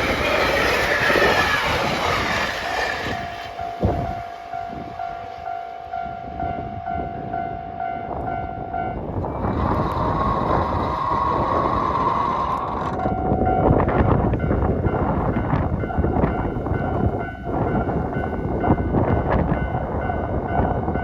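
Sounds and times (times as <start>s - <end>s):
train rushing past: 0.0s - 21.0s.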